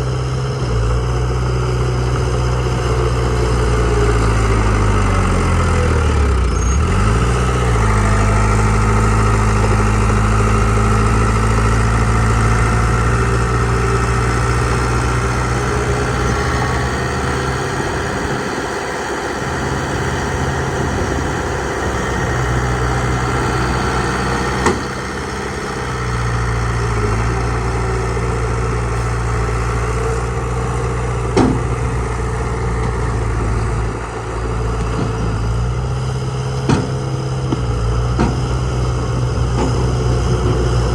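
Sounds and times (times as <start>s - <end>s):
heavy diesel engine running: 0.0s - 40.9s
sharp knocks: 31.4s - 31.8s.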